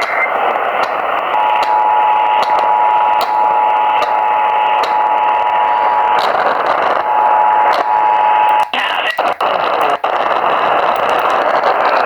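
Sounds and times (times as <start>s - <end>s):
loud radio static: 0.0s - 12.0s.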